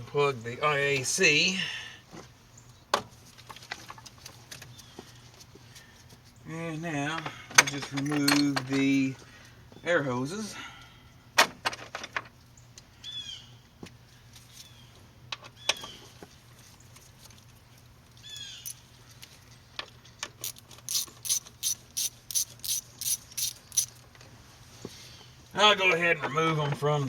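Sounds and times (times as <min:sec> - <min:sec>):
ratchet wrench clicking: 0:20.4 - 0:24.0.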